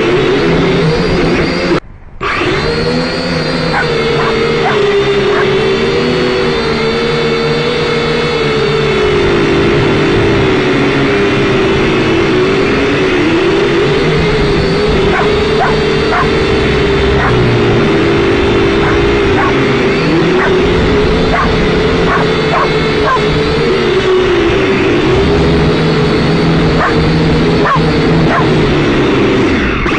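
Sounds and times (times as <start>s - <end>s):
drone propellers whining: 0.0s - 29.9s
dog barking: 3.7s - 5.5s, 15.1s - 16.3s, 17.2s - 17.4s, 18.8s - 19.6s, 20.4s - 20.6s, 21.3s - 23.3s, 26.8s - 27.0s, 27.6s - 28.6s.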